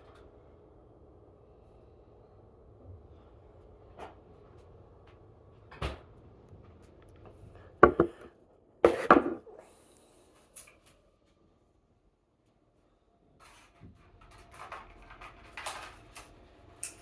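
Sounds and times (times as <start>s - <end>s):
knocks of objects being set down: 7.8s - 9.5s.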